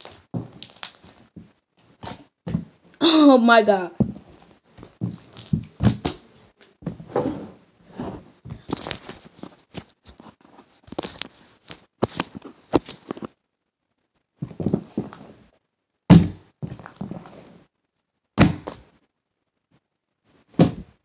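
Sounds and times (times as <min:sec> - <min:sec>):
slime stretched by hand: 0:00.0 - 0:01.3.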